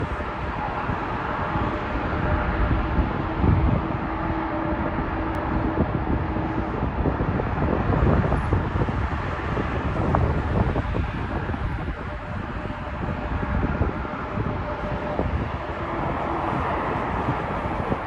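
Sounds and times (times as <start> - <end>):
jet engine roar: 0.0 - 18.0
wind buffeting microphone: 0.0 - 18.0.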